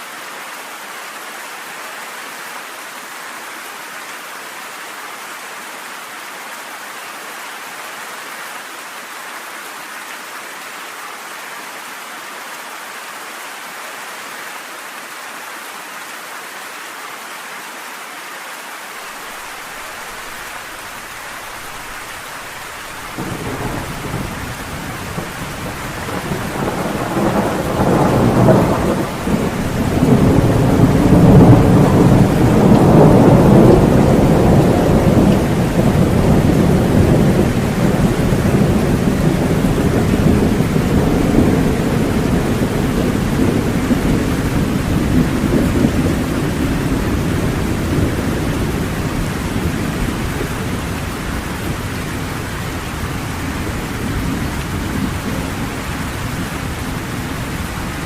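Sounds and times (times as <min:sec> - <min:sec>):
steady rain hiss: 0:00.0 - 0:58.0
rolling thunder rumble: 0:21.4 - 0:58.0.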